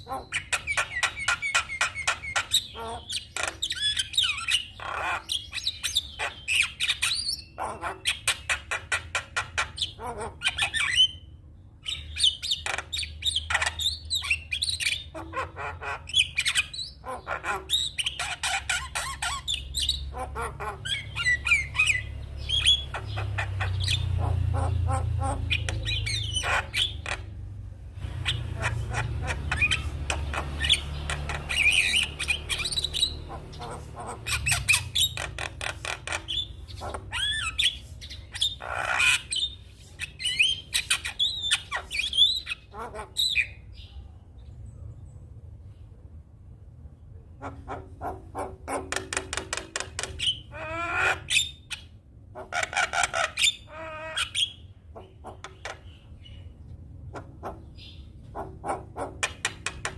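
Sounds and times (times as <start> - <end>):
bird chattering song: 0.0 - 45.8, 46.9 - 59.9
low steady rumble: 19.3 - 38.4.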